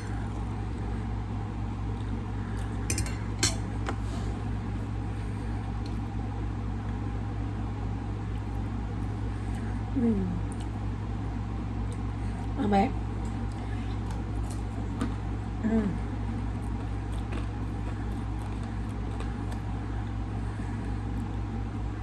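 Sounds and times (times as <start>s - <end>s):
steady low hum: 0.0s - 22.0s
cutlery clinking against dishes: 2.9s - 3.7s.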